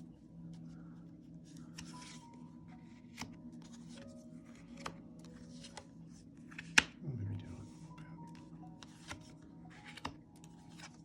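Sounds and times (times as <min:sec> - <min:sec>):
faint background music: 0:00.0 - 0:11.0
cards being shuffled: 0:01.6 - 0:07.0, 0:08.3 - 0:11.0
sharp card snaps: 0:06.5 - 0:07.0.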